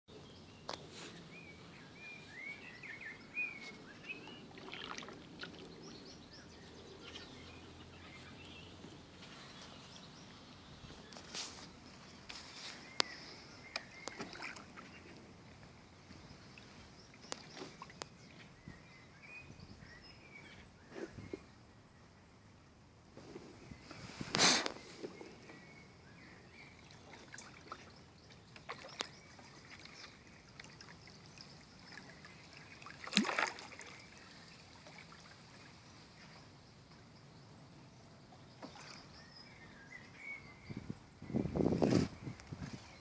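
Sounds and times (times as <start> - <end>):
small birds chirping: 0.1 - 21.8, 23.7 - 43.0
paddle knocks and splashes: 4.5 - 5.7, 13.7 - 15.1, 27.2 - 30.9, 32.8 - 34.1, 38.6 - 39.1.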